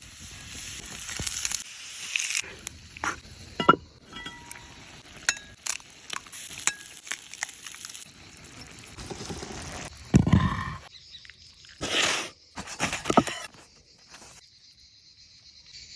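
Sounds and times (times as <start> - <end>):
faint sizzle from pan: 0.0 - 10.1
utensils and dishes clinking: 3.6 - 5.6.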